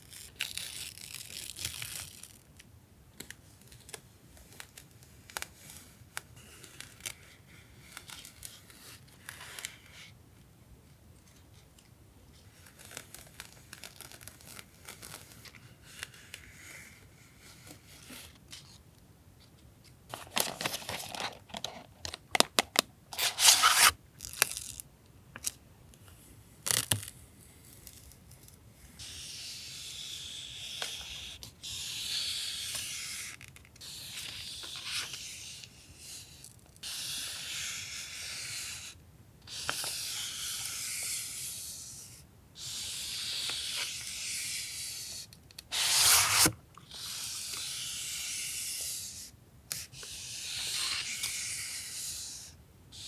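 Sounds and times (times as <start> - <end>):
tape unrolling: 20.1 - 24.8, 45.6 - 46.6
masking tape tearing: 23.2 - 24.4, 45.7 - 46.5.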